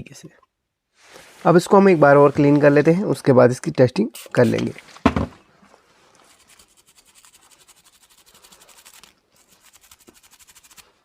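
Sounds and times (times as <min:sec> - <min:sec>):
small brush scrubbing circuit board: 0:06.1 - 0:11.0.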